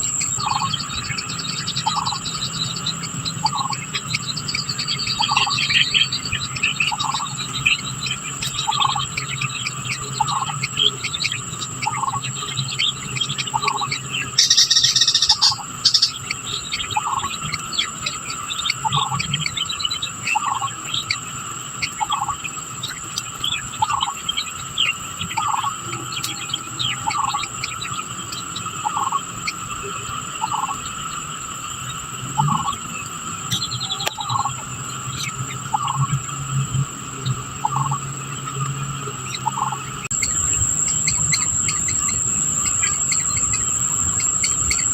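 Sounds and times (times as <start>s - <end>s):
bird chirps: 0.0s - 44.9s
high-pitched insect drone: 0.0s - 44.9s.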